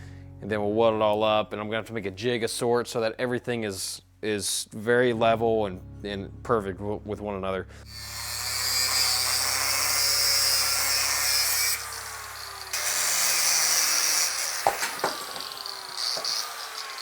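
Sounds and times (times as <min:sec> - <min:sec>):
angle grinder cutting steel: 0:07.9 - 0:17.0
sharp knocks: 0:14.6 - 0:16.4.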